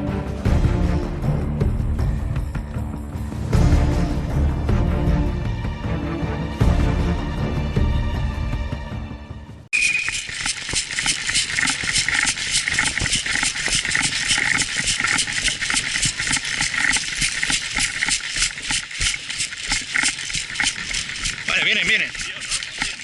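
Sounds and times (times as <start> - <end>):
loose gear rattling: 9.8 - 23.0
footsteps on dry ground: 10.4 - 23.0.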